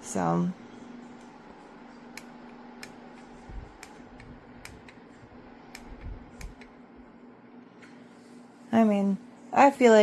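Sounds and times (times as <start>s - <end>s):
fan humming: 0.0s - 10.0s.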